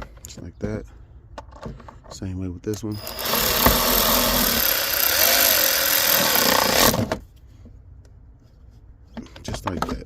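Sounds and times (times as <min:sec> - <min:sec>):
power tool driving a screw: 0:03.0 - 0:07.2.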